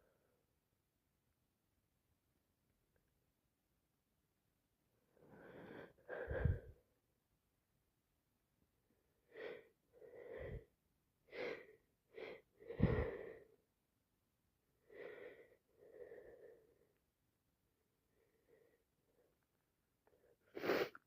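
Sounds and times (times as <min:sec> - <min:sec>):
breathy intake: 0:05.3 - 0:06.8, 0:12.3 - 0:13.6.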